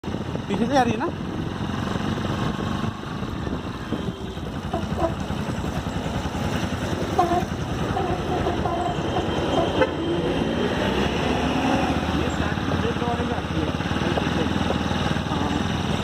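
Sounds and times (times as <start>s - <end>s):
brake whine: 0.0s - 16.0s
motorcycle engine running: 0.0s - 16.0s.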